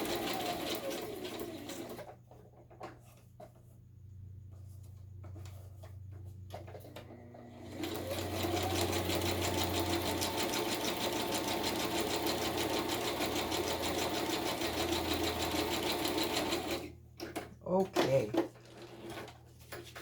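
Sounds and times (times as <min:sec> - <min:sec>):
sewing machine stitching: 0:00.0 - 0:02.1, 0:06.5 - 0:17.0, 0:18.6 - 0:19.4.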